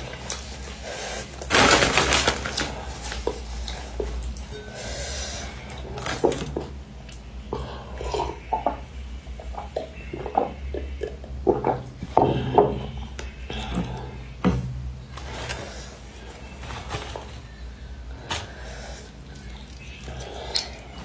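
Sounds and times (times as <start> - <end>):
steady low hum: 0.0 - 21.0
chewing and lip-smacking: 19.1 - 21.0.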